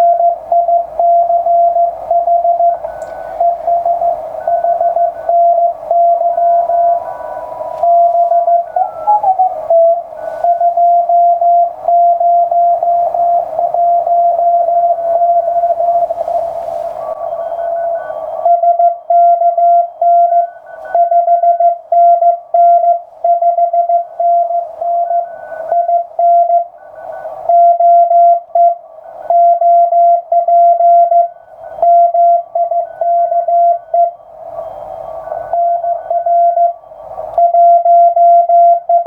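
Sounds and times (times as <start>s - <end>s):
morse code tone: 0.0s - 28.8s
faint radio signals: 2.3s - 18.2s
radio band hiss: 15.0s - 17.3s.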